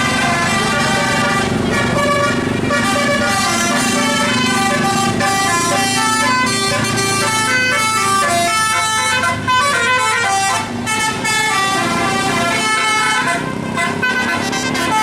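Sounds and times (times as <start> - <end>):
bus musical air horn melody: 0.0 - 15.0.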